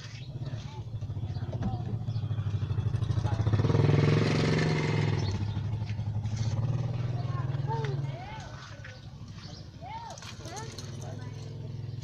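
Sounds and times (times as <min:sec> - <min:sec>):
vehicle engine revving: 0:00.0 - 0:09.6.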